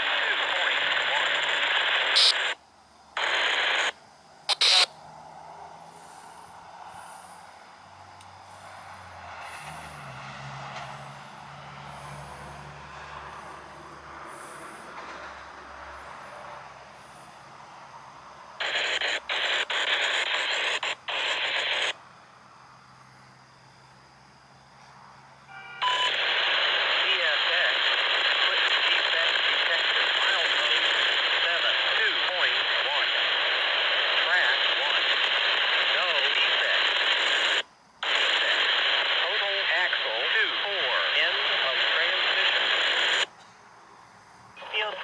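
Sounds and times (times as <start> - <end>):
radio static bursts: 0.0 - 5.0, 18.6 - 22.0, 25.8 - 43.3, 44.6 - 45.0.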